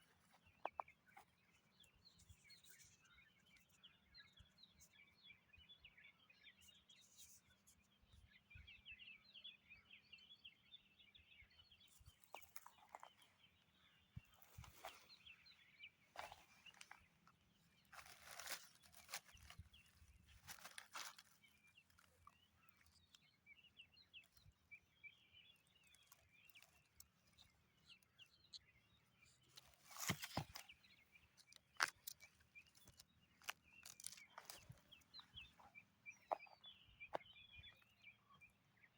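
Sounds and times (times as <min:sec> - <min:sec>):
small birds chirping: 0:00.0 - 0:38.9
rustling crunches: 0:16.1 - 0:22.4, 0:29.5 - 0:30.8, 0:31.4 - 0:36.4.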